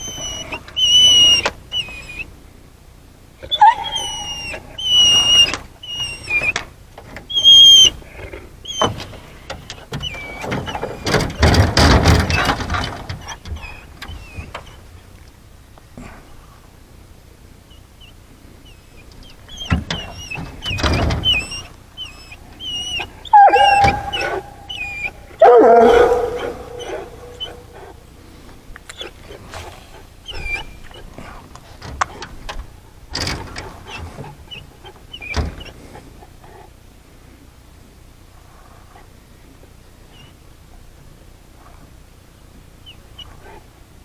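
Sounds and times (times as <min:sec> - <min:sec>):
dog whining: 0:00.0 - 0:02.3, 0:03.4 - 0:06.6, 0:07.3 - 0:09.1, 0:09.8 - 0:14.8, 0:18.0 - 0:28.1, 0:28.9 - 0:31.2, 0:33.2 - 0:35.8
dog howling: 0:03.4 - 0:06.5, 0:21.3 - 0:28.0.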